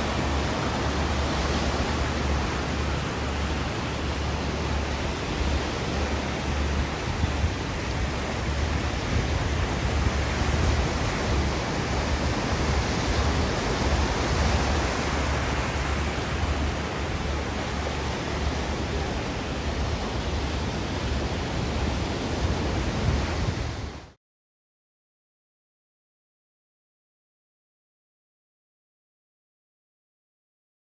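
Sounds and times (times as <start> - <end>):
ocean waves washing on shore: 0.0 - 24.2.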